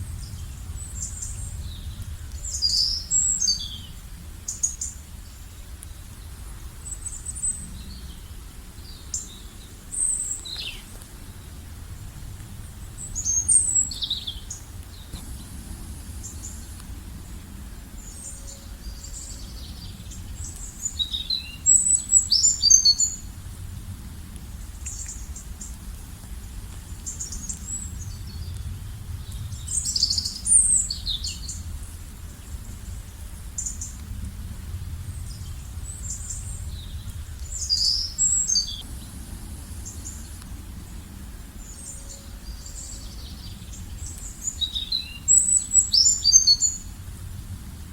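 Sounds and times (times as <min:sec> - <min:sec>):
low rumble: 0:00.0 - 0:04.2, 0:11.2 - 0:20.6, 0:33.9 - 0:44.1
songbirds chirping and trilling: 0:00.1 - 0:23.3, 0:35.0 - 0:46.9.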